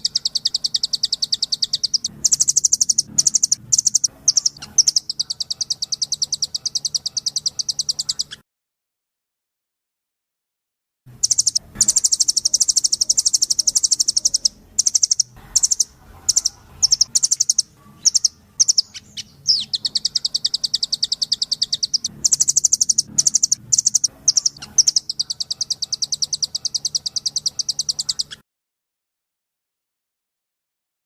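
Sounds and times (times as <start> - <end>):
bird chips: 0.0 - 8.4, 11.2 - 28.4
bird rattling trills: 11.2 - 28.4.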